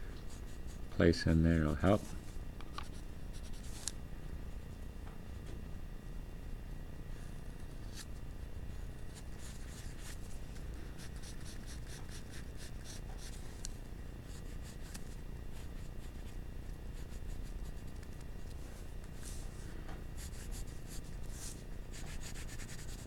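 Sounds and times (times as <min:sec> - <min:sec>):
pencil scratching on paper: 0:11.0 - 0:13.6, 0:14.2 - 0:16.4, 0:17.0 - 0:23.0.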